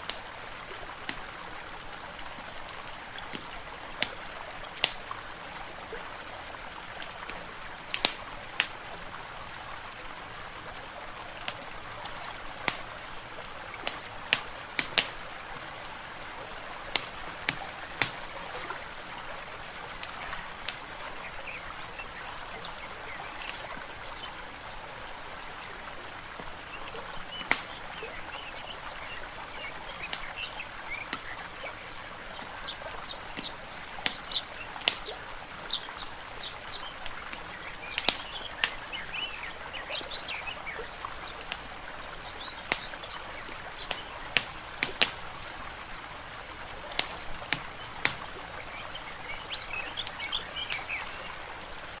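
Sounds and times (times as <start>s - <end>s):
water washing: 11.3s - 28.5s, 40.0s - 52.0s
small birds chirping: 13.8s - 25.8s, 26.4s - 45.1s, 46.4s - 51.8s.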